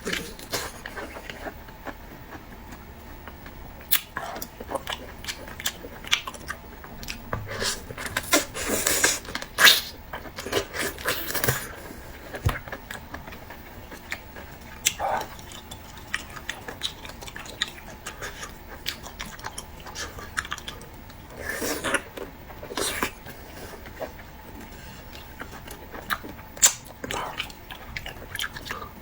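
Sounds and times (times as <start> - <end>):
person biting and chewing: 25.2 - 28.8.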